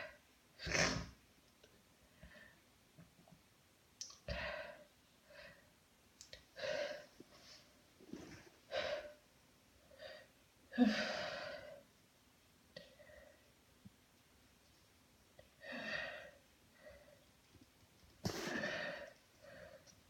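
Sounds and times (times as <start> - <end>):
woman breathing heavily: 6.6 - 9.2, 9.9 - 11.9, 15.5 - 17.3, 18.3 - 19.9.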